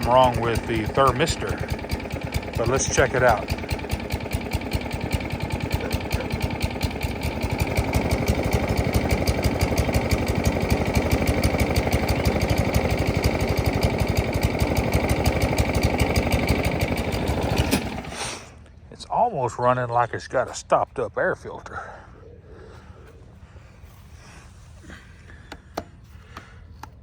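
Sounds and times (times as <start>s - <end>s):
lawn mower engine running: 0.0s - 18.7s.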